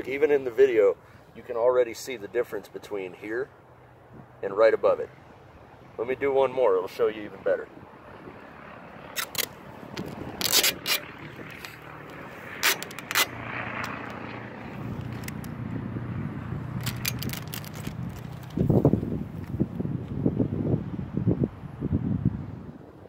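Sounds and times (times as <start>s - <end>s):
tape ripping off roll: 9.2s - 11.8s, 12.5s - 14.2s, 16.8s - 18.8s
tape rubbing: 9.2s - 15.6s, 16.7s - 19.6s.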